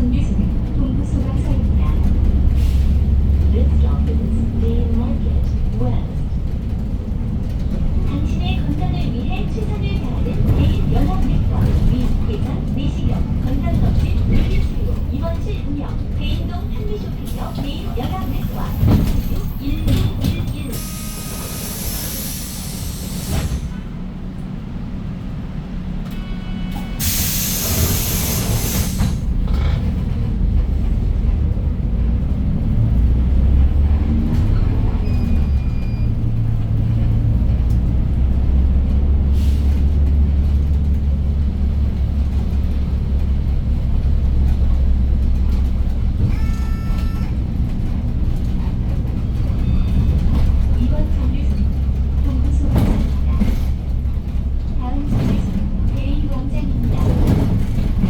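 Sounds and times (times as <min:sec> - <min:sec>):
bus engine running: 0:00.0 - 0:58.0
compressed air hissing: 0:21.0 - 0:23.7, 0:27.0 - 0:29.2.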